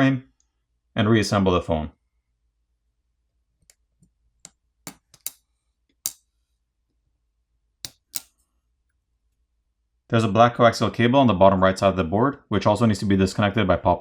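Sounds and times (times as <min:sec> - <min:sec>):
pry tool clicking on circuit board: 0:04.9 - 0:05.4, 0:07.9 - 0:08.3.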